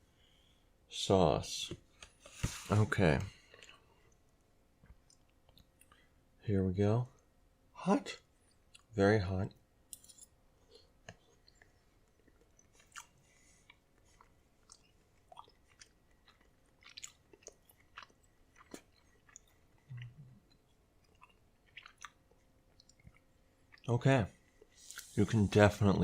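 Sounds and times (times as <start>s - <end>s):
chewing mouth clicks and smacks: 10.7s - 23.9s.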